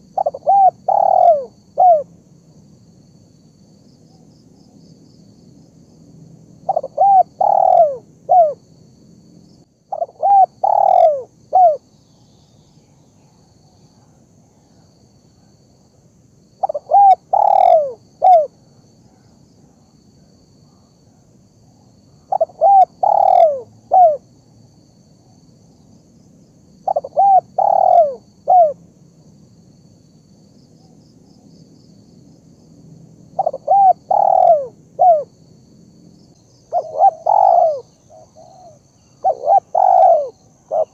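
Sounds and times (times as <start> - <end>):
dove cooing: 0.0 - 2.1, 6.6 - 8.6, 9.9 - 11.8, 16.6 - 19.3, 22.2 - 24.3, 26.8 - 28.8, 33.4 - 35.4, 36.6 - 40.9.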